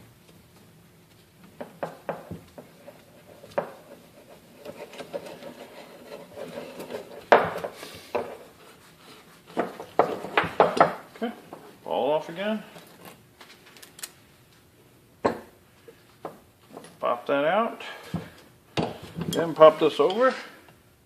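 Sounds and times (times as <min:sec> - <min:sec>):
metal scraping: 0:02.8 - 0:07.4.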